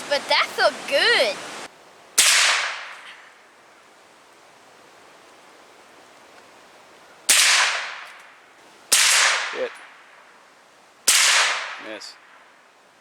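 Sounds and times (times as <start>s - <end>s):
gunshots ringing: 8.9s - 9.9s.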